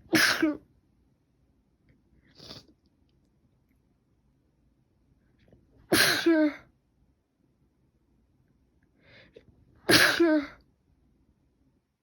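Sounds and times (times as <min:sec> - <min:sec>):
person sneezing: 0:00.0 - 0:00.7, 0:05.9 - 0:06.7, 0:09.8 - 0:10.6
short breath: 0:09.0 - 0:09.4.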